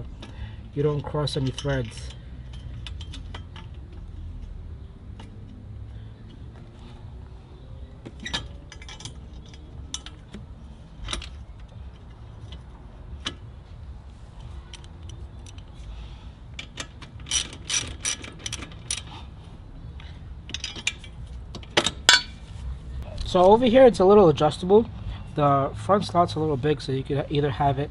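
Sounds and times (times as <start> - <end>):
hand ratchet clicking: 16.5 - 19.2.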